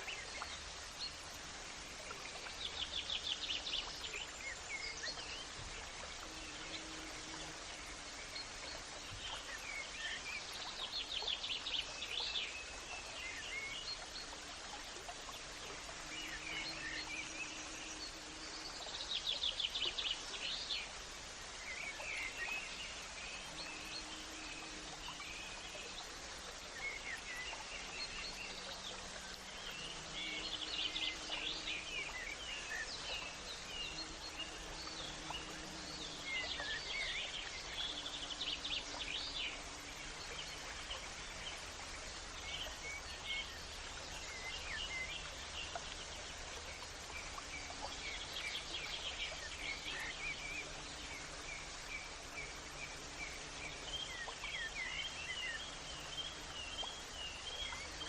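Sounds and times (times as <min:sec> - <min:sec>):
steady background hiss: 0:00.0 - 0:58.0.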